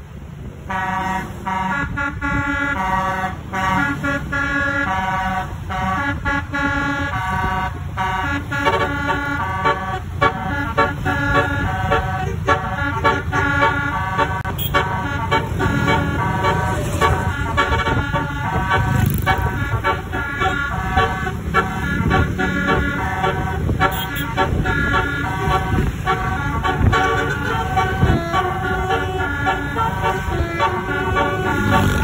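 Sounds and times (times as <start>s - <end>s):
musical air horn tune: 0.7s - 32.0s.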